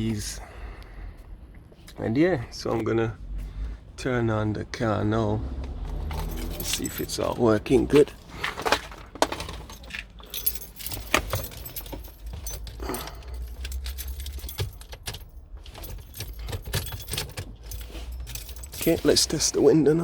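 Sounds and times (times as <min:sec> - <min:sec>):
car keys jangling: 0:05.4 - 0:20.0
key clicking in ignition: 0:05.6 - 0:19.4.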